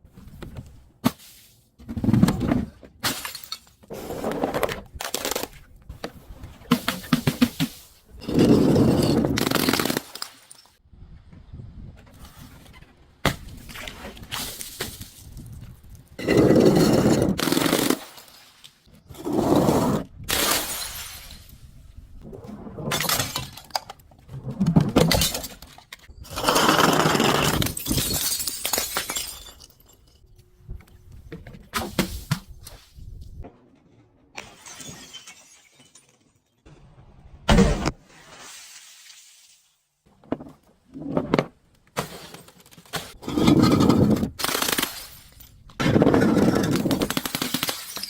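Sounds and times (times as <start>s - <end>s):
glass bottles crushing and shattering: 3.0s - 3.8s, 6.9s - 10.8s, 22.9s - 23.9s, 24.8s - 30.3s, 34.4s - 36.6s, 42.0s - 48.0s
crackling of glass: 46.8s - 48.0s.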